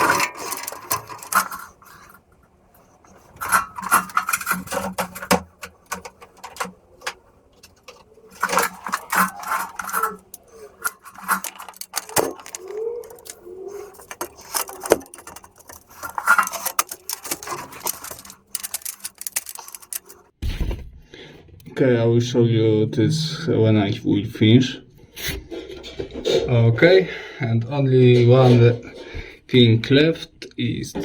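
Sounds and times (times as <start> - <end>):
short squeaks: 0.0 - 20.2
metal tools clinking and scraping: 0.0 - 20.3.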